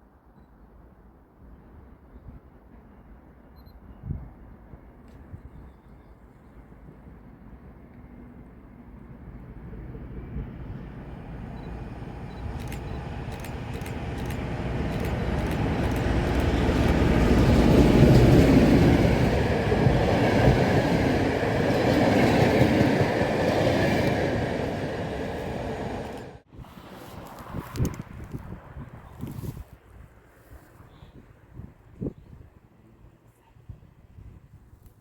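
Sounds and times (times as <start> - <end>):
freight train passing: 6.8 - 29.1
train wheels clicking: 12.3 - 26.4.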